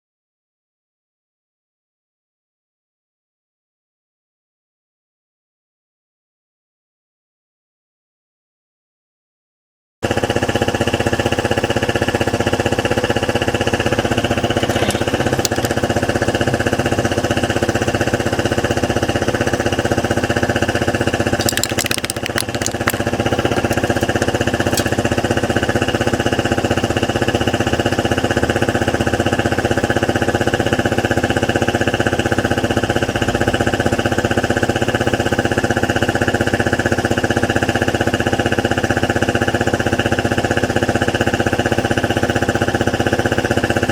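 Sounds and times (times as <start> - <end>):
scooter engine idling: 10.1 - 33.2
sharp clicks: 14.8 - 15.8, 21.4 - 25.0.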